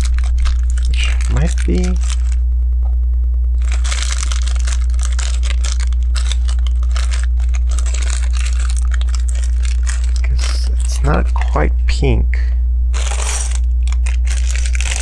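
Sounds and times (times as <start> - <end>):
steady low hum: 0.0 - 15.0
plastic toy bricks rattling: 3.6 - 10.2.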